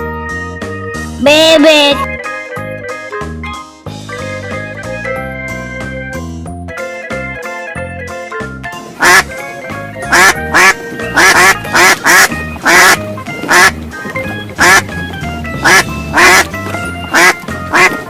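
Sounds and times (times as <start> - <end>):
keyboard music: 0.0 - 18.0
duck quacking: 9.0 - 9.4, 10.1 - 13.8, 14.6 - 14.9, 15.6 - 18.0.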